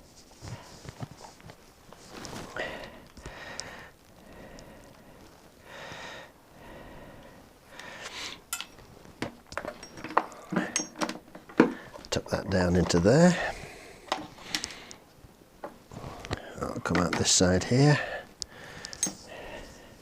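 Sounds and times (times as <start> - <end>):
person breathing through nose: 2.4 - 8.5, 13.4 - 15.1, 17.9 - 20.0.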